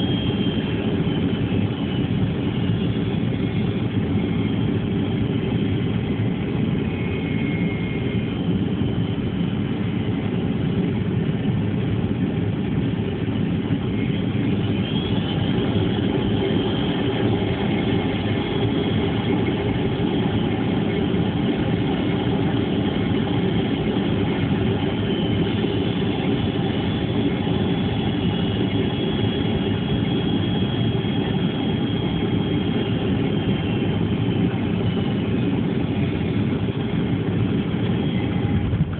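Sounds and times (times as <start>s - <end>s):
airliner engines rumbling: 0.0s - 38.9s
faint high whine: 0.0s - 38.9s.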